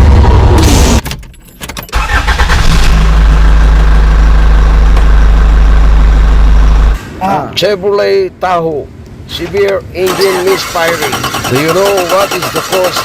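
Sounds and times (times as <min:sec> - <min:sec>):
misfiring car engine idling: 0:02.0 - 0:07.0.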